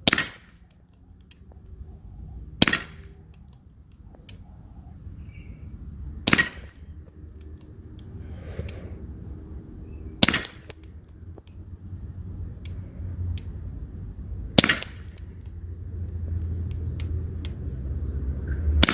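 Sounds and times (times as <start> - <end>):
air pistol shots popping: 0.0 - 1.8, 2.4 - 4.4, 6.1 - 8.9, 9.9 - 11.8, 12.4 - 17.8.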